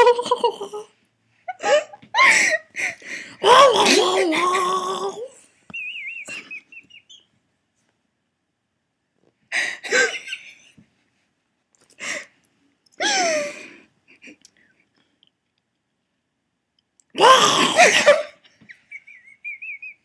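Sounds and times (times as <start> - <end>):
woman wheezing laughter: 1.5 - 3.0, 5.8 - 7.2, 9.6 - 10.8, 13.0 - 14.4, 17.8 - 20.0.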